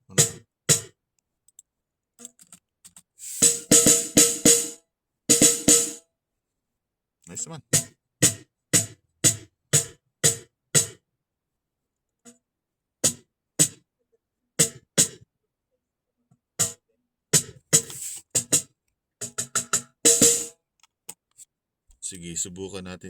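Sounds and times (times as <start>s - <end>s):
snare drum hits: 3.4s - 6.0s, 20.1s - 20.5s.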